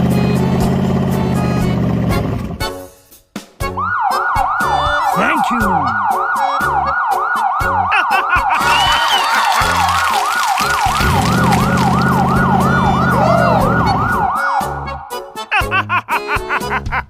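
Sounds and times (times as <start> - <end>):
background music with a beat: 2.6 - 17.0
siren yelping: 3.8 - 14.8.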